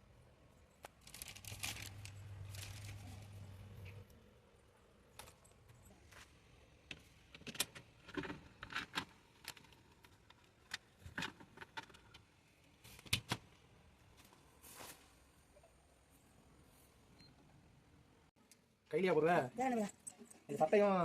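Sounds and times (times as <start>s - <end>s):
clicks and rustles of handling: 5.1s - 14.5s.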